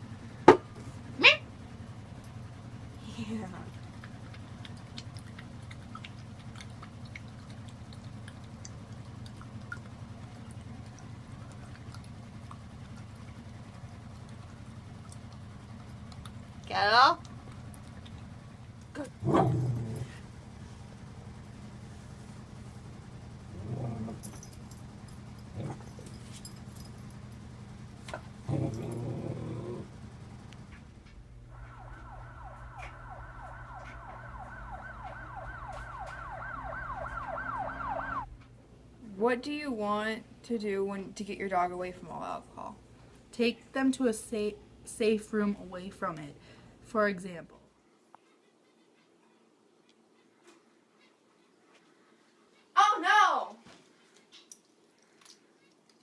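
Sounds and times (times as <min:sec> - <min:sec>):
steady low hum: 0:00.0 - 0:48.1
pet chewing clicks: 0:03.7 - 0:18.9
dog vocalizing: 0:25.5 - 0:26.1.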